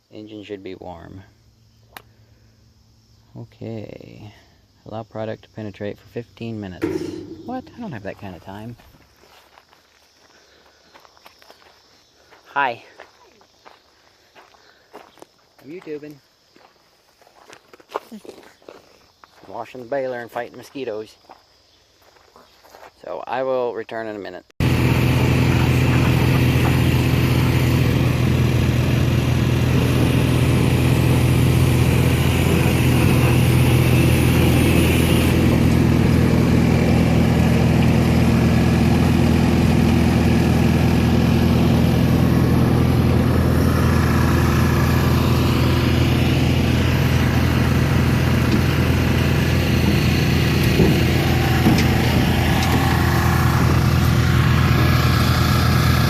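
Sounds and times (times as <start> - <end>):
engine running steadily: 6.8 - 8.3, 24.6 - 56.0.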